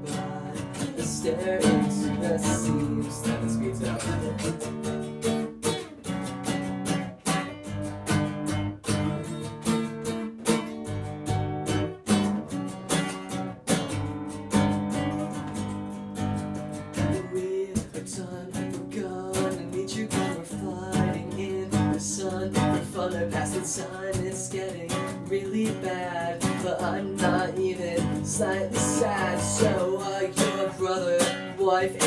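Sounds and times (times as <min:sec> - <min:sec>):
guitar strumming chords: 0:00.0 - 0:32.0.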